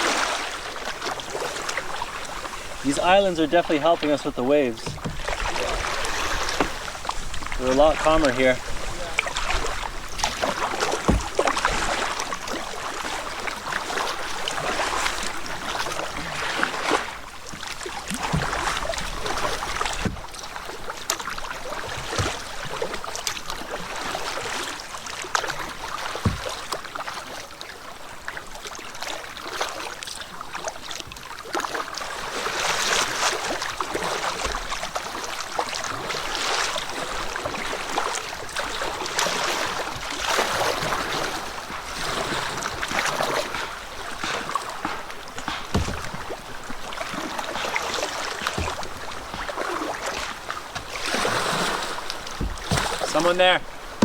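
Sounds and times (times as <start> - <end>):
paddle splashing water: 0.0 - 54.0
sharp knocks: 10.9 - 11.6, 44.8 - 46.4, 52.3 - 53.2.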